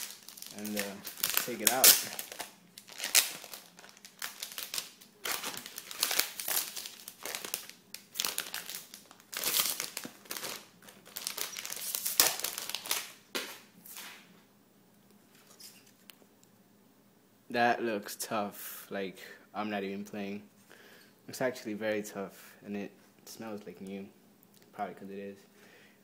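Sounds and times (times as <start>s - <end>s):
packaging wrap crinkling: 0.0s - 14.1s.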